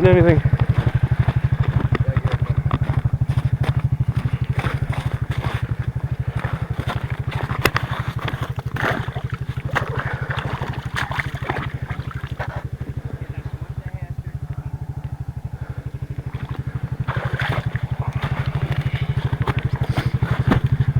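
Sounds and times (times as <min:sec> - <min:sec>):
small engine idling: 0:00.0 - 0:20.9
light knocks and rustles: 0:16.6 - 0:20.9.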